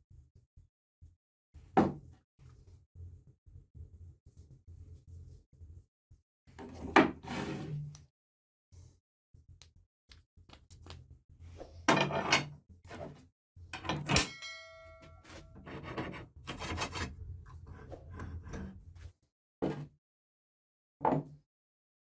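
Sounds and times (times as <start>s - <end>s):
metal parts scraping and knocking: 11.9s - 13.1s, 13.8s - 14.4s
ringing metal strike: 14.2s - 15.3s.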